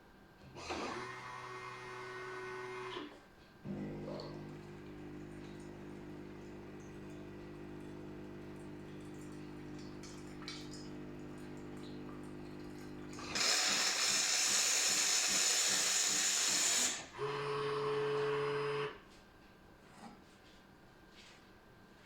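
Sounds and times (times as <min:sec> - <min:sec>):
low machine hum: 0:03.6 - 0:13.4
steam and water hissing: 0:13.3 - 0:17.1.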